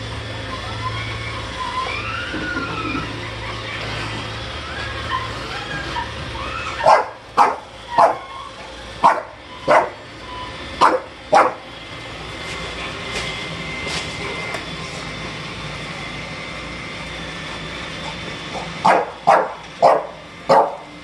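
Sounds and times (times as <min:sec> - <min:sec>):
dog barking: 0:06.8 - 0:08.2, 0:09.0 - 0:10.0, 0:10.8 - 0:11.6, 0:18.8 - 0:20.9.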